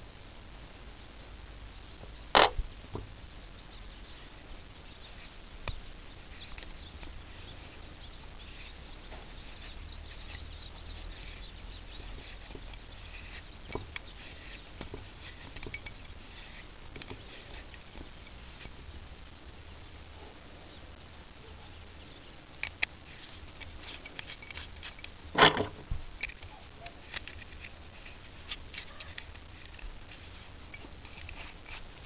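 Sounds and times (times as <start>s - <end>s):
low steady hum: 0.0s - 32.0s
small clicks and scratching: 3.7s - 19.1s, 22.5s - 32.0s.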